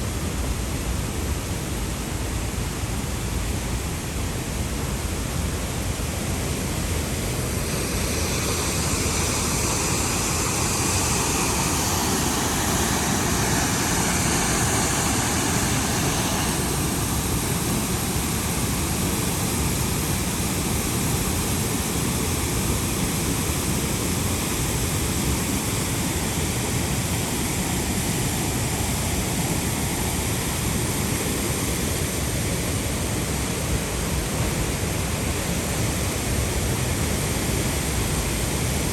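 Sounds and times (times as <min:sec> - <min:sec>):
waterfall roaring: 0:05.3 - 0:31.1
bright hiss: 0:07.4 - 0:19.9.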